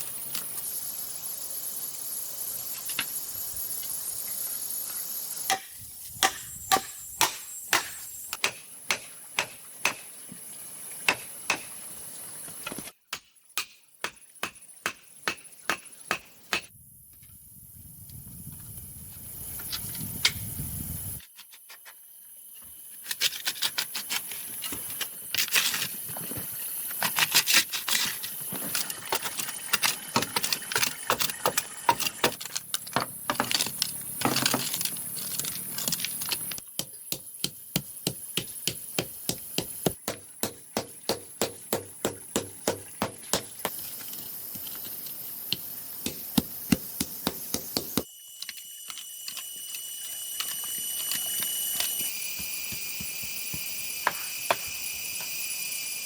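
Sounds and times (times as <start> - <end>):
hand tool knocking on bamboo: 36.8 - 43.8, 45.5 - 48.1
steady high hiss: 51.6 - 56.0.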